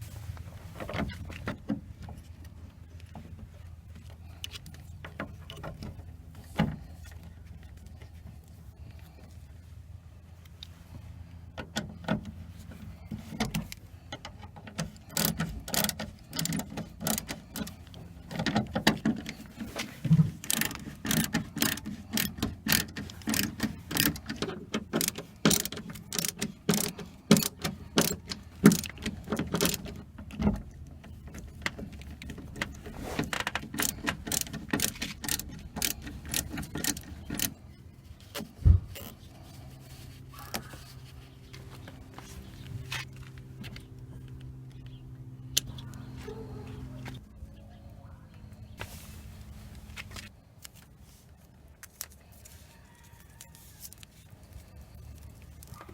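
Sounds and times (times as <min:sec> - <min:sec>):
hand tools clicking: 0:20.4 - 0:30.1, 0:31.3 - 0:37.5.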